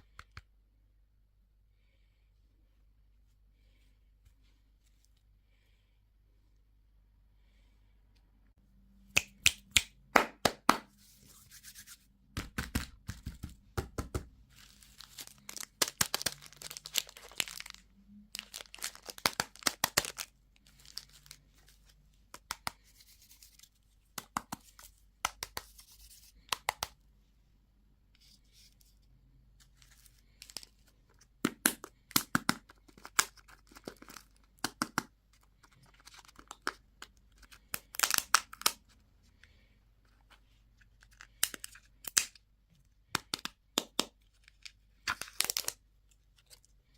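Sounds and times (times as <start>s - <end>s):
plastic wrappers crinkling and tearing: 14.5s - 22.0s, 35.8s - 38.8s, 44.4s - 46.7s.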